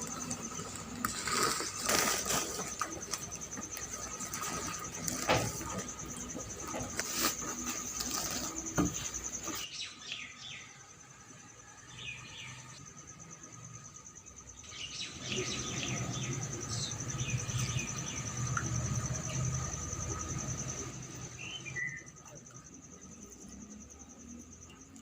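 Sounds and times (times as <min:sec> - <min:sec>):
insect trilling: 0:00.0 - 0:09.7, 0:12.0 - 0:25.0
birds chirping: 0:13.8 - 0:22.5.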